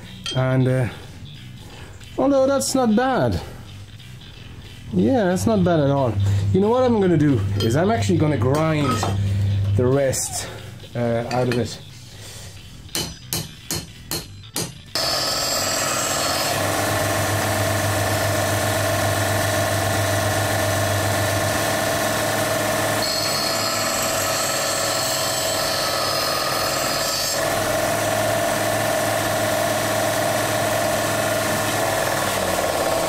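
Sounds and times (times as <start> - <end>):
electric grinder grinding steel: 5.5 - 10.5, 15.0 - 33.0.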